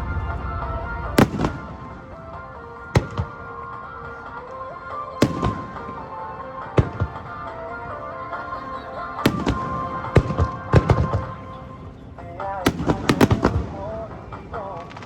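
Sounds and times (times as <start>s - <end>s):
song playing: 0.0s - 15.0s
firework shells bursting: 1.2s - 3.4s, 5.2s - 7.4s, 9.2s - 11.5s, 12.5s - 15.0s.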